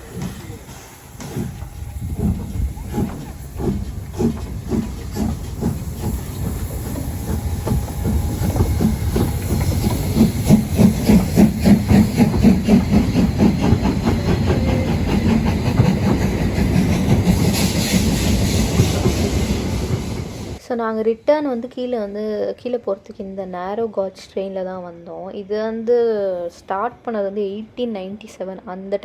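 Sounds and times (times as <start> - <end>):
steam hissing: 0.0 - 20.6
steam locomotive chuffing: 0.0 - 20.6.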